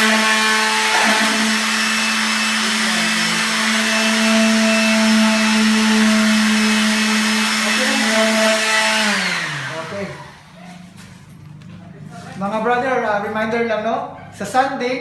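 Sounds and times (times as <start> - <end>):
electric sander running: 0.0 - 10.6.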